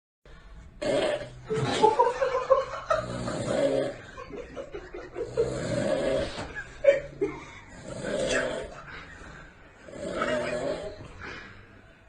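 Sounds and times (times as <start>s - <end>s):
person snoring: 0.8s - 2.0s, 2.9s - 4.3s, 5.1s - 11.6s.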